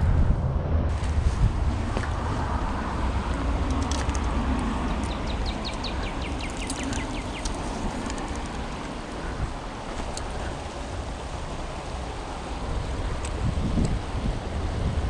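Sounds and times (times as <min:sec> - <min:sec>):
wind rumble on microphone: 0:00.0 - 0:15.0
bird chirping: 0:04.8 - 0:08.5.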